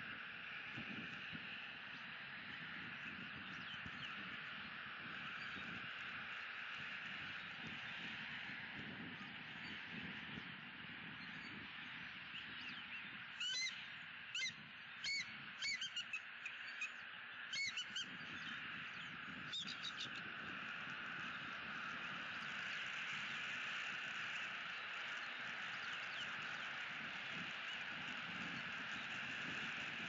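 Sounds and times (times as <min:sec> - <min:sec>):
bird calling: 0:13.3 - 0:20.6.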